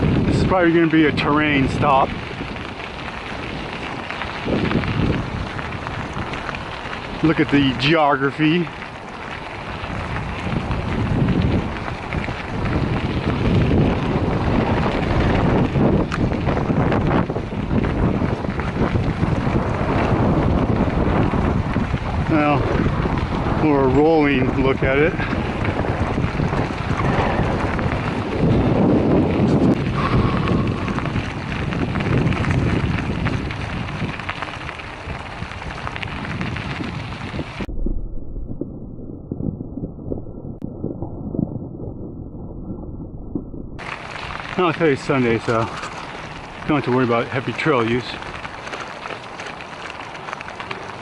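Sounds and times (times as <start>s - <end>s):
tyres rolling on gravel: 0.0s - 37.7s, 43.8s - 51.0s
wind over microphone: 0.0s - 51.0s
small ticks and crunches: 0.6s - 20.2s, 25.0s - 28.6s, 29.4s - 37.7s, 43.8s - 51.0s.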